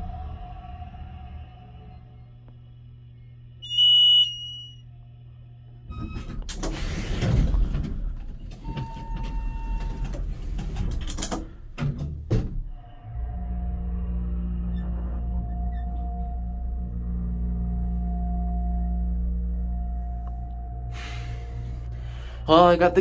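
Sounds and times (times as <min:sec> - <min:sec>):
elevator car humming: 0:00.0 - 0:23.0
elevator arrival chime: 0:03.6 - 0:04.8, 0:08.6 - 0:10.2
elevator doors rumbling and clunking: 0:05.8 - 0:18.1.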